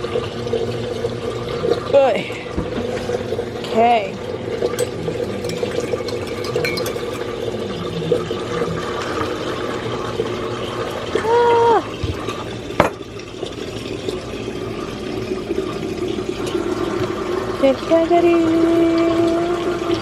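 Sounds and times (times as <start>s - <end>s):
spoon clinking in glass: 4.7s - 7.3s.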